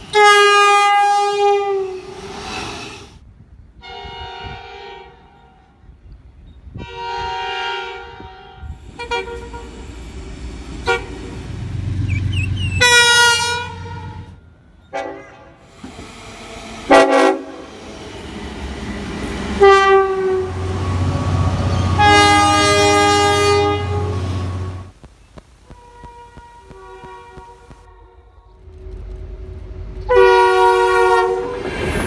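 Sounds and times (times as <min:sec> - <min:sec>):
locomotive air horn blasts: 0:00.0 - 0:02.2, 0:03.8 - 0:05.7, 0:06.8 - 0:09.8, 0:10.8 - 0:11.4, 0:12.8 - 0:15.8, 0:16.6 - 0:25.0, 0:25.6 - 0:28.6, 0:30.1 - 0:31.7
passing train rumble: 0:00.0 - 0:32.0.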